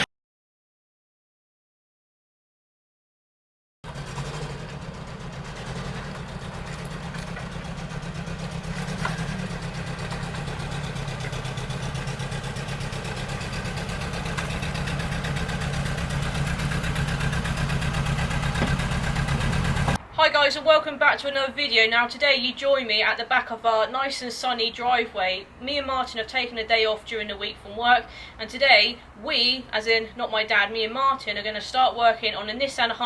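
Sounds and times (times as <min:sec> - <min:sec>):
car engine idling: 0:03.8 - 0:20.0.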